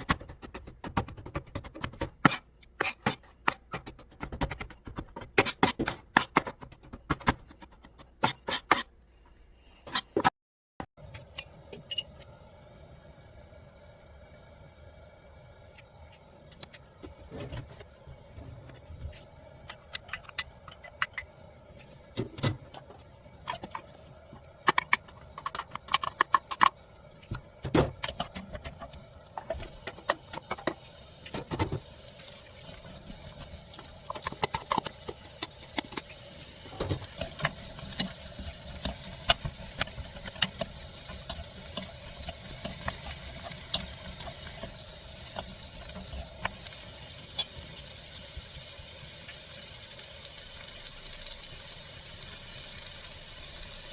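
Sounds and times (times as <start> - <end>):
spatula scraping pan: 1.6 - 9.0, 18.4 - 31.8
vegetables sizzling in frying pan: 23.4 - 53.9.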